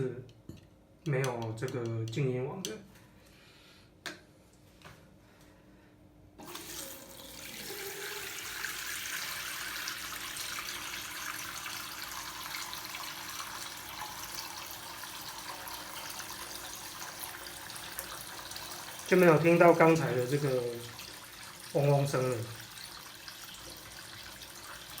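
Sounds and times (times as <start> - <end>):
water running from faucet: 6.4 - 25.0.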